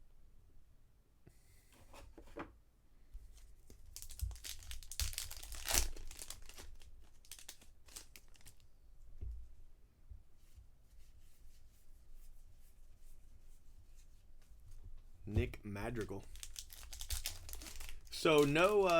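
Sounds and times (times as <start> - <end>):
foil wrapper tearing and crinkling: 3.9 - 8.6, 16.2 - 18.9.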